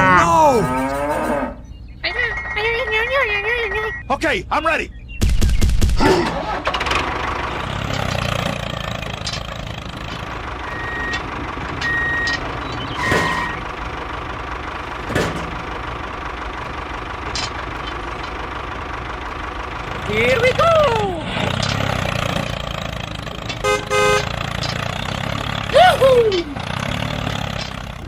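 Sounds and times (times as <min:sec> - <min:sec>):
vehicle engine running: 0:00.0 - 0:28.0
short high beeps: 0:02.1 - 0:02.7.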